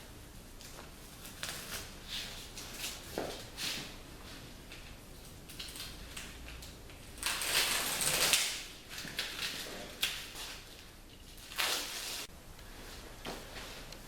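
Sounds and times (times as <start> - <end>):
duct tape ripping: 1.2 - 3.1, 7.2 - 10.6, 11.4 - 12.3.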